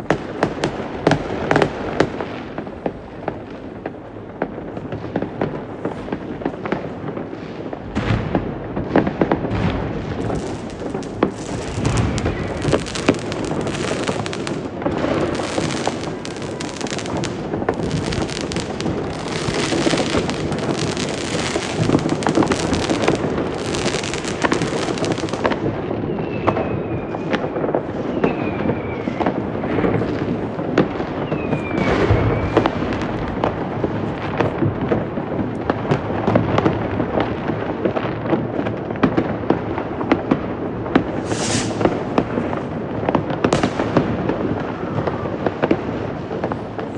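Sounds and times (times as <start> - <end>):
fireworks and firecrackers banging: 0.0 - 46.9
falling firework whistles: 10.2 - 27.4, 28.1 - 30.3, 31.2 - 33.2, 41.0 - 42.6, 43.5 - 44.2.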